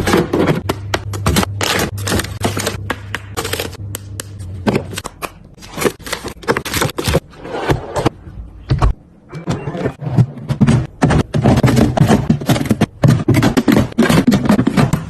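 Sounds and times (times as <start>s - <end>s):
food containers clattering: 9.4s - 15.0s.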